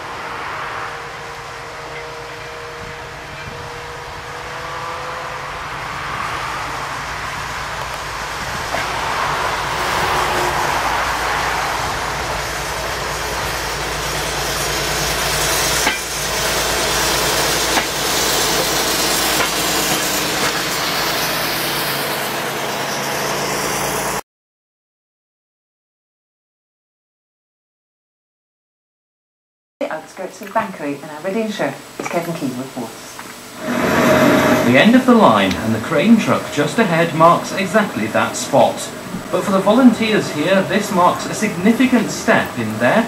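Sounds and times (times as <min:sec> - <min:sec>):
train running on rails: 0:00.0 - 0:24.2, 0:29.8 - 0:43.0
sharp knocks: 0:15.8 - 0:16.1, 0:17.7 - 0:18.0.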